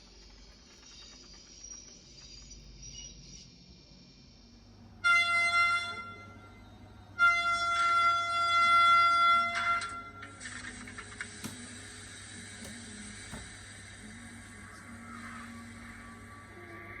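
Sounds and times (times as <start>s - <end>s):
model train horn blasts: 5.0s - 6.4s, 7.2s - 10.2s.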